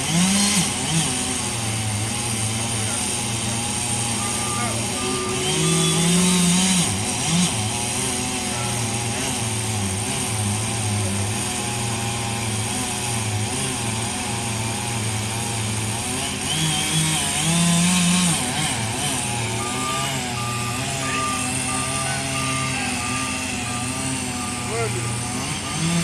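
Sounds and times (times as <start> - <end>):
machinery engine running and revving: 0.0 - 26.0.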